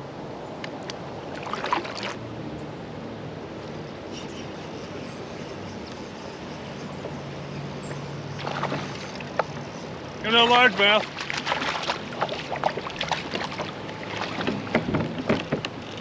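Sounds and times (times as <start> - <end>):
water sloshing around kayak: 0.9 - 2.2, 6.8 - 16.0
clatter and splashing: 8.4 - 9.6, 11.0 - 16.0.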